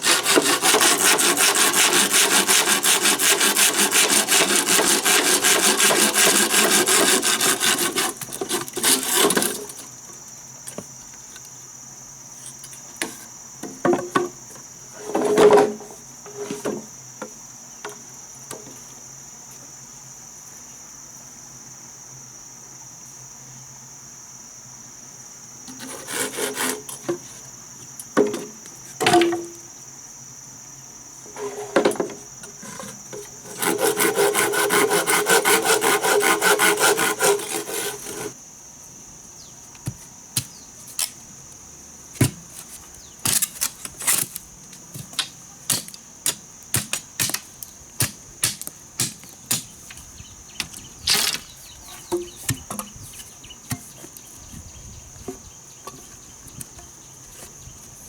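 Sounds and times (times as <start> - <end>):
hand saw cutting: 0.0 - 9.8, 25.7 - 26.9, 33.4 - 38.4, 43.2 - 44.4, 45.0 - 52.8
scrapes on wood: 0.0 - 9.8, 31.3 - 38.4, 48.0 - 54.3
insects chirring: 0.0 - 58.0.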